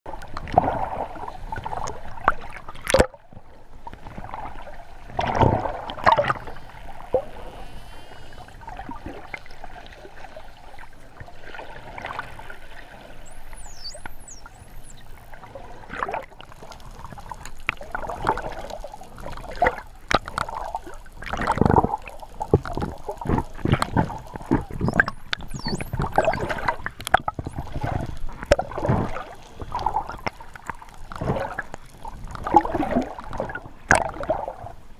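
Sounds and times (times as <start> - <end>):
underwater water and bubbles: 0.1 - 34.9
dolphin clicks and pulses: 12.2 - 34.6
dolphin whistles: 13.2 - 15.1, 24.7 - 26.6.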